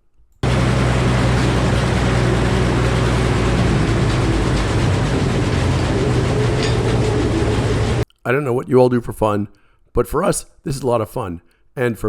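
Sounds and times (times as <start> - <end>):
circular saw spinning: 0.4 - 8.0
low hum of power unit: 0.4 - 8.0.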